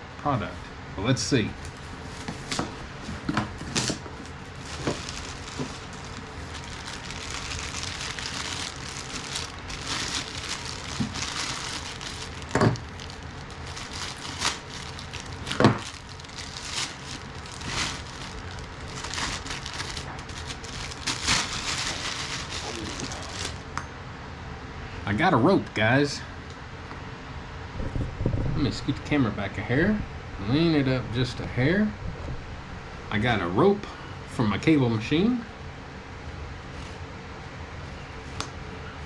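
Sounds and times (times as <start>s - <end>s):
plastic packaging crinkling: 1.6s - 23.6s.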